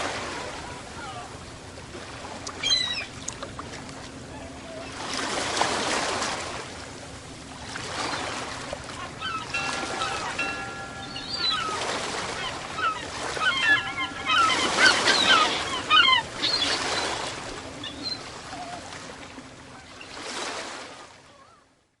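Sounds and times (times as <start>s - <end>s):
ocean surf: 4.9s - 21.1s
birds calling: 8.0s - 18.3s.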